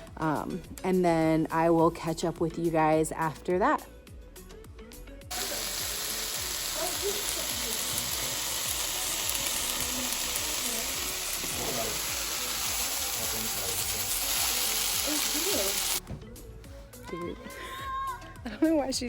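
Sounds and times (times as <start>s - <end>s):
food sizzling in a frying pan: 5.3s - 16.0s.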